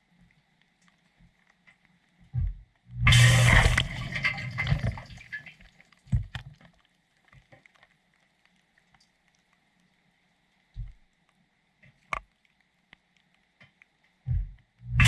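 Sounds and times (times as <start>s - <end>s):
water splashing in a dishwasher: 3.1s - 5.6s.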